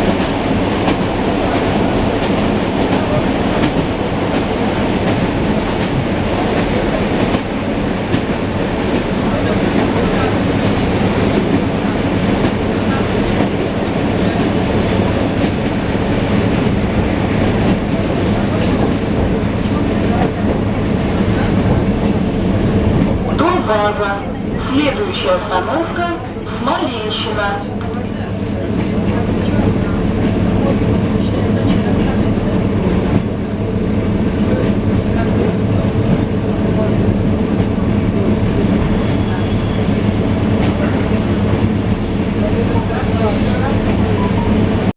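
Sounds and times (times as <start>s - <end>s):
train wheels clattering over rails: 0.0s - 23.3s.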